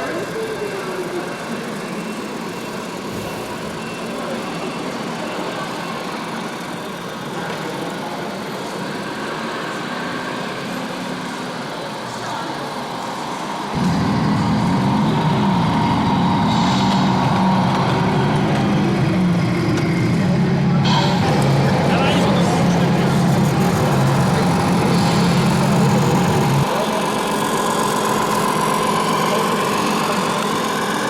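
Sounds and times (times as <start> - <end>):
crowd voices: 0.0 - 31.0.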